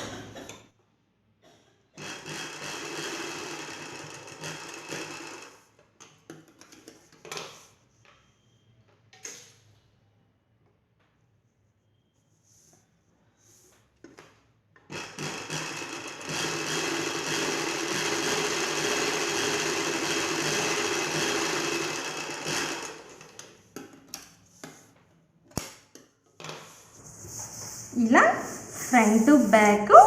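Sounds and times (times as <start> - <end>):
sewing machine stitching: 2.0 - 5.7, 14.9 - 23.5.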